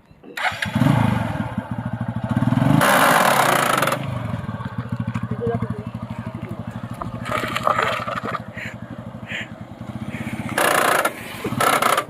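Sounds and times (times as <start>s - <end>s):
motorcycle engine running: 0.4s - 12.0s
harsh chain rasp: 10.6s - 12.0s.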